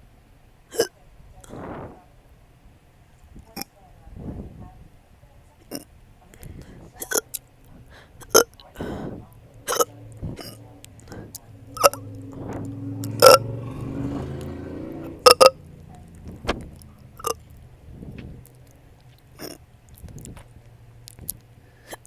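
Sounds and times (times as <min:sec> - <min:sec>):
long low burp: 0:08.2 - 0:17.4.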